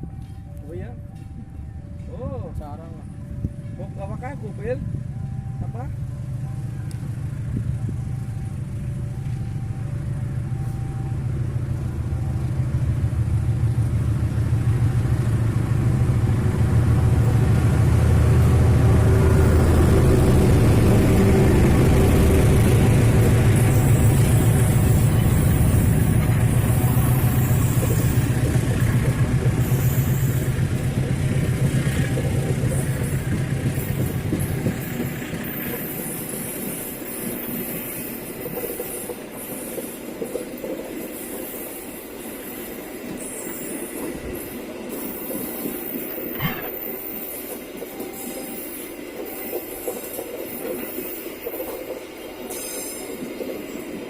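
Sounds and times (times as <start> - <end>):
train engine rumble: 0.0 - 54.0
rail noise hiss: 6.6 - 54.0.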